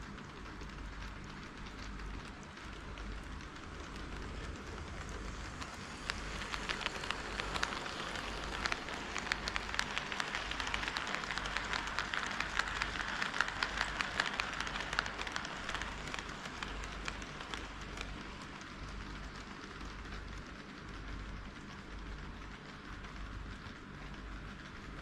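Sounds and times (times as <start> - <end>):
wheels clicking over rail joints: 0.0 - 25.0
model train rolling hiss: 3.8 - 19.2.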